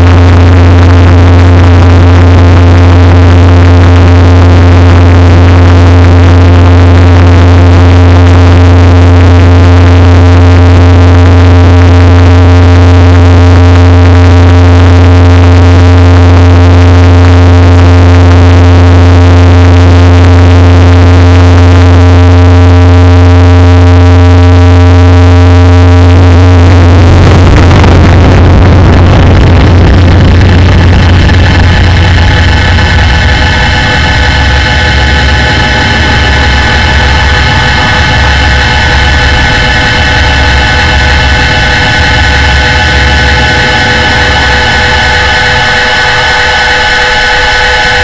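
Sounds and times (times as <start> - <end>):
low synthesizer drone: 0.0 - 48.0
held high synthesizer tones: 32.0 - 47.6.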